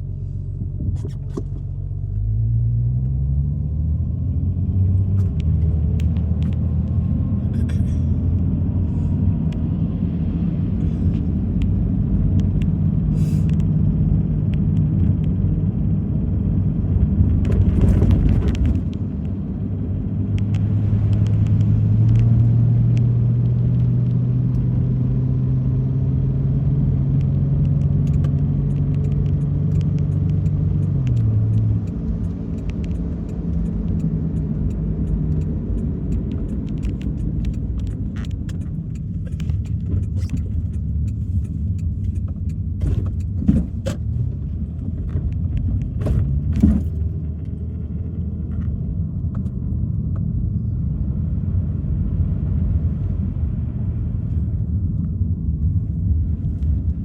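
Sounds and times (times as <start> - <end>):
car engine hum: 0.0 - 57.0
road noise: 0.0 - 57.0
light ticks: 27.2 - 46.0.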